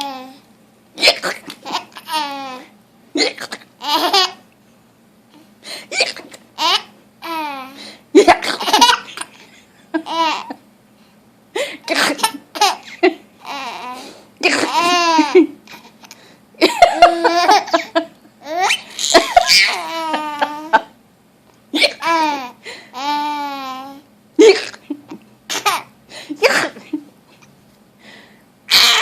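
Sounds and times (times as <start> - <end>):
baby laughing and squealing: 1.0 - 2.7, 6.0 - 7.7, 12.0 - 15.9, 17.0 - 20.9, 21.8 - 24.0, 28.7 - 29.0
woman hiccuping: 3.2 - 3.7, 24.4 - 24.9.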